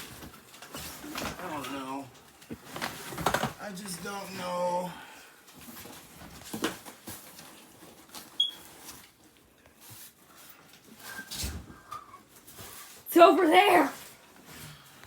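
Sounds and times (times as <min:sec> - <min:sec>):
fire alarm chirp: 0:08.4 - 0:08.6.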